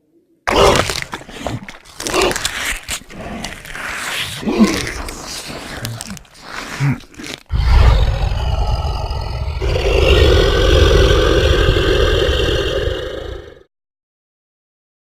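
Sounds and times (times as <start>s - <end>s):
deep monster growl: 3.1s - 13.7s.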